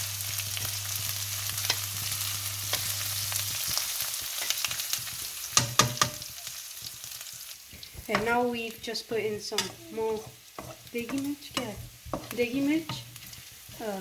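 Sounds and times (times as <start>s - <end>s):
spices sizzling in hot oil: 0.0s - 14.0s
utensil knocking on pan: 5.6s - 6.3s, 8.1s - 8.4s, 9.6s - 13.2s.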